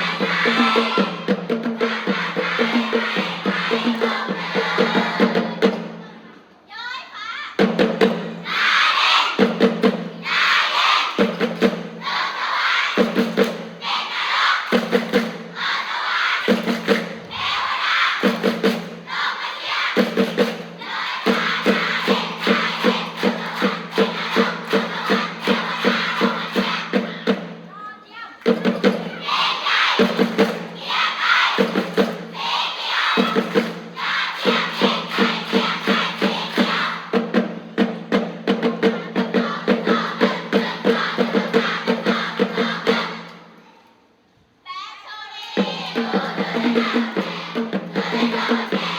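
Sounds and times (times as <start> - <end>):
drum beats: 0.0 - 6.0, 7.6 - 43.5, 45.6 - 48.9
children chanting in unison: 0.0 - 6.2, 8.2 - 27.4, 28.5 - 37.4, 38.8 - 43.9, 44.7 - 48.9.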